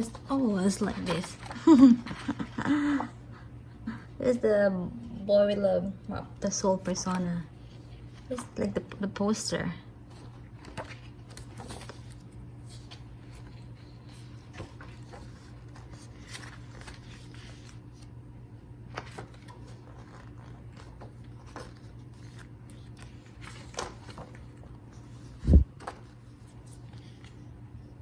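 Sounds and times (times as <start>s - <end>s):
paper pages rustling: 0.0s - 2.7s, 10.0s - 18.2s, 18.8s - 28.0s
steady low hum: 0.0s - 28.0s.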